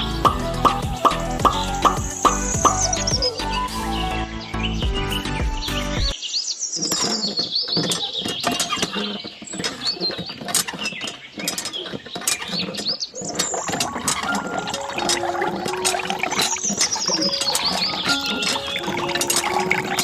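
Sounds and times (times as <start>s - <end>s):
background music: 0.0s - 6.2s, 13.7s - 20.0s
small birds chirping: 0.0s - 20.0s.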